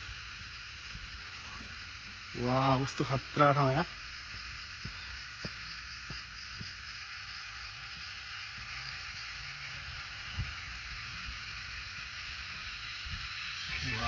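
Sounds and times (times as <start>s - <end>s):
high outdoor hiss: 0.0s - 14.0s.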